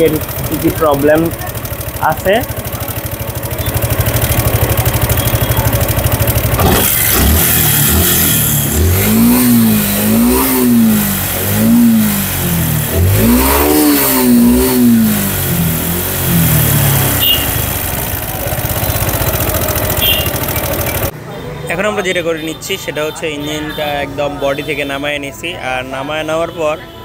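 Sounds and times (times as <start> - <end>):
motorcycle engine idling and revving: 0.0 - 21.2.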